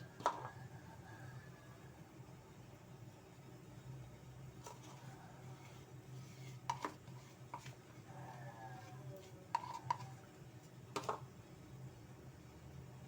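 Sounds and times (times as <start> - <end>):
utensil clinking against a dish: 6.5 - 10.3.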